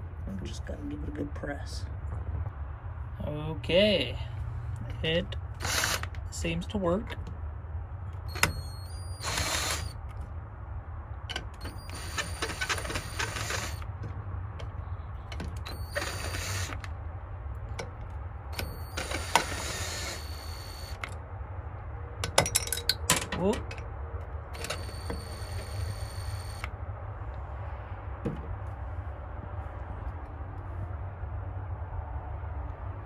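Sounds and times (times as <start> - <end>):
mechanical rattling with high whine: 0.0 - 30.9.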